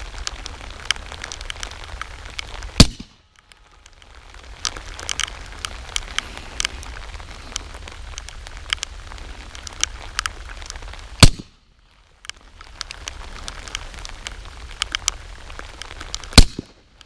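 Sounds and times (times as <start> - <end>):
sharp clicks and crackles: 0.0 - 17.0
suppressed pistol shot: 2.8 - 3.2, 11.2 - 11.6.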